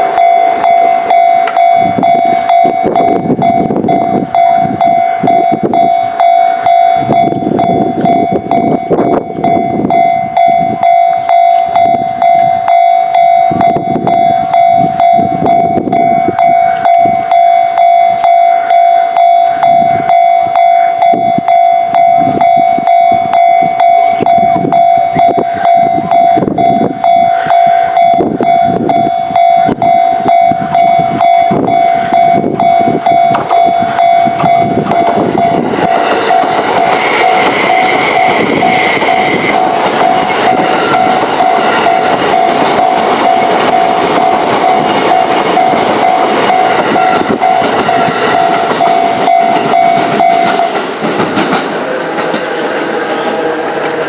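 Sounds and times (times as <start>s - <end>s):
level crossing warning bell: 0.0s - 54.0s
train running: 0.0s - 54.0s.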